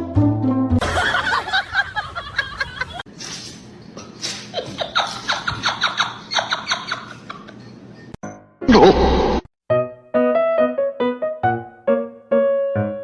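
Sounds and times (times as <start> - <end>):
person giggling: 8.7 - 9.1.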